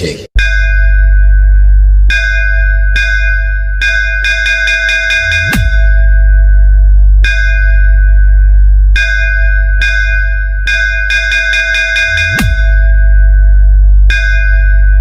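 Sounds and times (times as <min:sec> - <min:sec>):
bell-like melody: 0:00.4 - 0:06.4
deep sustained bass: 0:00.4 - 0:11.3, 0:12.0 - 0:15.0.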